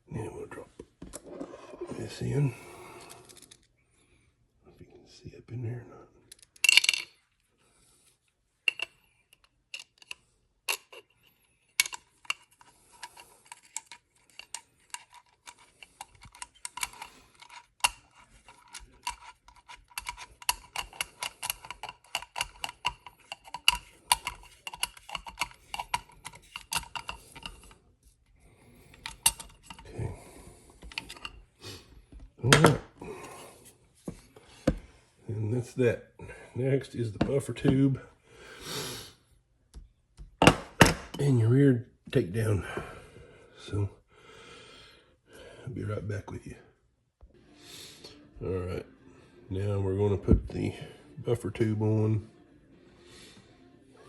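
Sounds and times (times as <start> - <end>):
metal parts clicking and tapping: 6.3 - 7.1, 8.6 - 11.1, 11.7 - 27.8, 28.9 - 29.9, 30.8 - 31.4.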